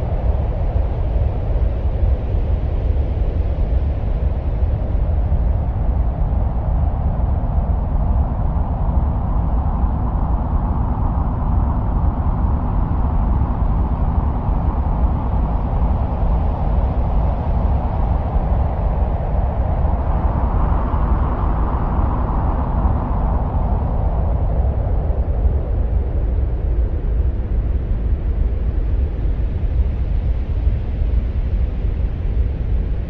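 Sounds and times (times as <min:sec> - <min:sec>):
low rumbling wind-like noise: 0:00.0 - 0:33.0.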